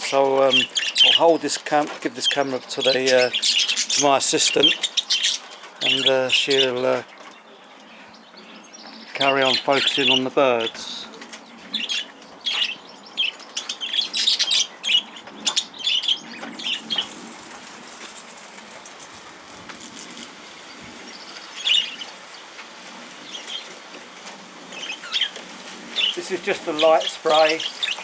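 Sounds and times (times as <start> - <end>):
budgerigars chirping: 0.4 - 7.0, 8.1 - 11.2, 11.8 - 28.0
wings fluttering: 16.5 - 28.0
hose spray hissing: 16.6 - 28.0.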